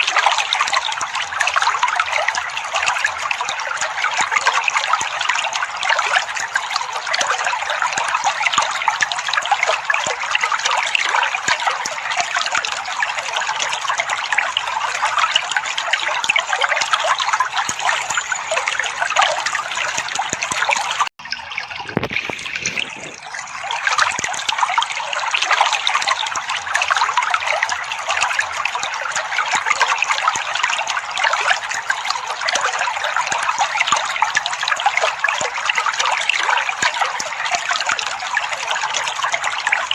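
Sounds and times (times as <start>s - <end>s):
trickling splashing water: 0.0s - 39.9s.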